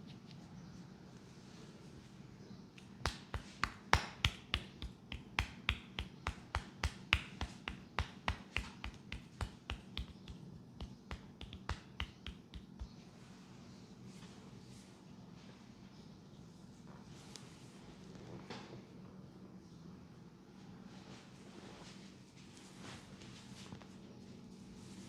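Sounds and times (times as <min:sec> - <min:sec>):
hands clapping on head: 0:02.8 - 0:13.0.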